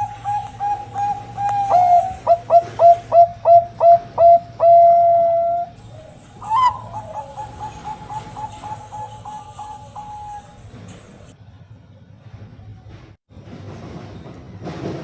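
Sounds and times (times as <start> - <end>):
dove cooing: 0.0 - 11.3.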